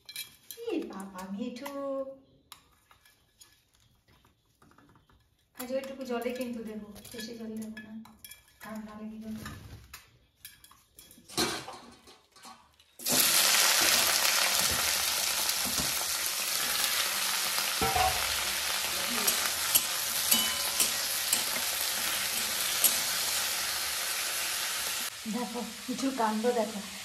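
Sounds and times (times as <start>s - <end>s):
stirring clicks: 0.0s - 9.2s
food sizzling in hot oil: 13.0s - 27.0s.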